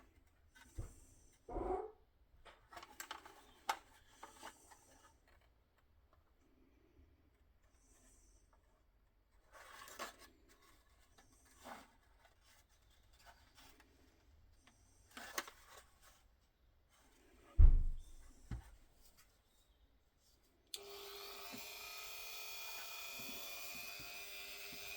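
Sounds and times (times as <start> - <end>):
loud low thump: 17.6 - 18.1.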